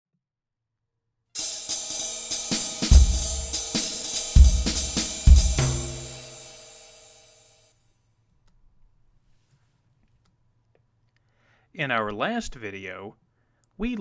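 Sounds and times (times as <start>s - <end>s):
intro music with drum kit: 1.4s - 7.4s.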